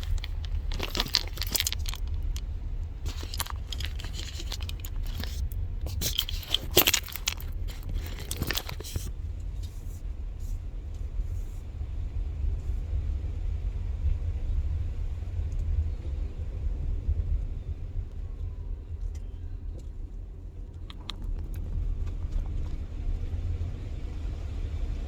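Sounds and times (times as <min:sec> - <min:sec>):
crunching and scraping: 0:00.0 - 0:09.1, 0:20.8 - 0:22.8
low rumble: 0:00.0 - 0:10.8.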